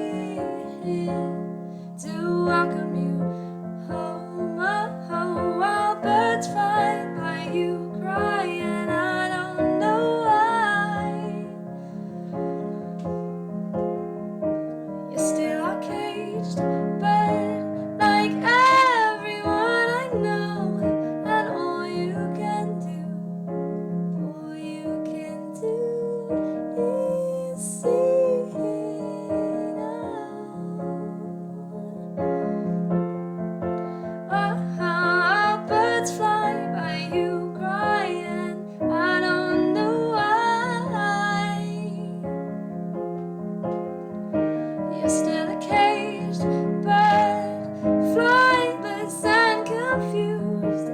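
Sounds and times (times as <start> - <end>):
woman singing with vibrato: 0.0 - 3.3, 3.9 - 11.6, 15.1 - 23.2, 24.4 - 32.0, 34.3 - 42.2, 44.9 - 50.9
piano accompaniment: 0.0 - 50.9.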